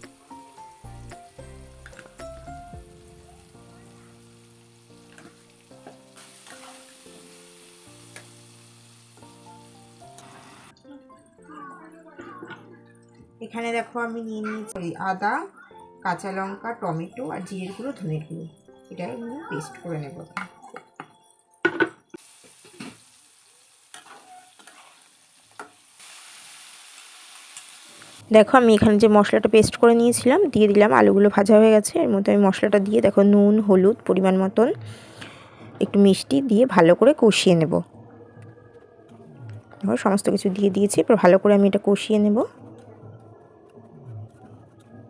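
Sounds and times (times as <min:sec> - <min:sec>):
potatoes sizzling in hot oil: 0:00.0 - 0:10.7, 0:22.2 - 0:31.0
soft background music: 0:00.0 - 0:23.1, 0:28.2 - 0:45.0
spatula scraping a pan: 0:23.9 - 0:25.8.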